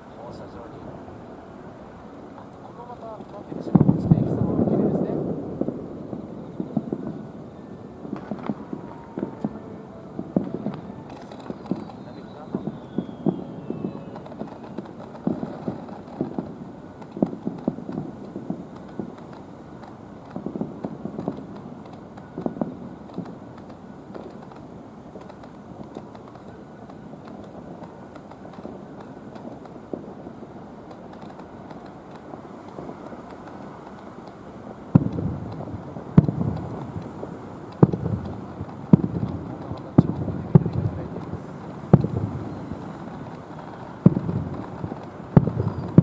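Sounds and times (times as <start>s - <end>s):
distant fireworks popping: 0.0s - 46.0s
outdoor background noise: 0.0s - 46.0s
sharp firework bang: 2.8s - 19.2s.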